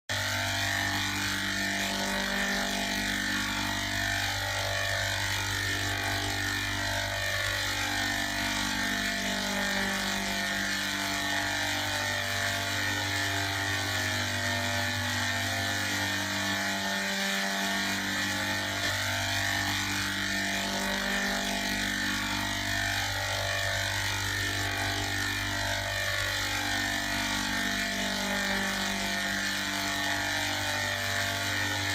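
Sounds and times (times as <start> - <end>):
distorted buzzing music: 0.1 - 31.9.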